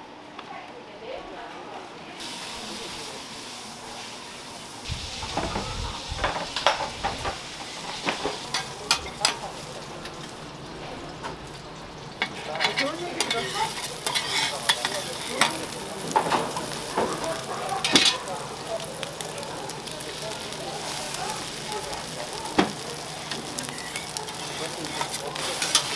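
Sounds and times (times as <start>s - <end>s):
food sizzling on a griddle: 2.2s - 25.9s
metal utensil scraping and clicking: 7.6s - 10.4s, 12.2s - 18.3s, 22.5s - 25.9s.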